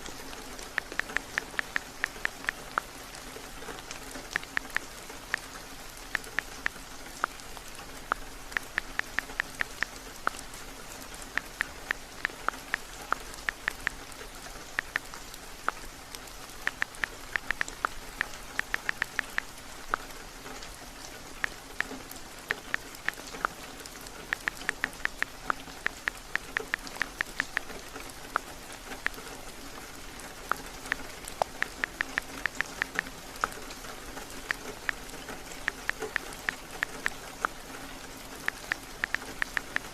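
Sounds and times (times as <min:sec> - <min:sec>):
steady rain falling: 0:00.0 - 0:39.9
touchscreen typing taps: 0:08.1 - 0:10.4, 0:16.6 - 0:19.5, 0:24.3 - 0:27.7, 0:30.9 - 0:33.1.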